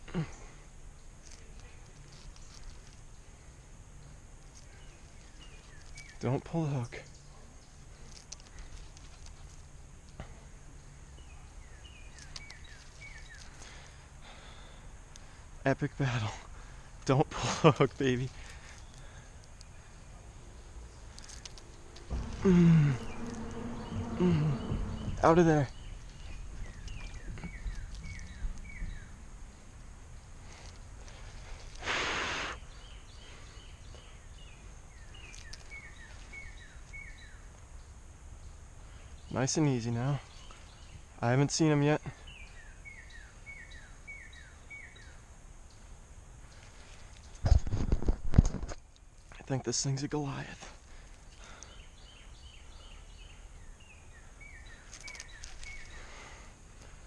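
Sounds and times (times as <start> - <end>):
small birds chirping: 0.0 - 57.0
steady low rumble: 12.8 - 31.9
faint clicks: 15.1 - 15.3
loud hissing rush: 16.0 - 33.6
bird singing descending notes: 19.6 - 30.3.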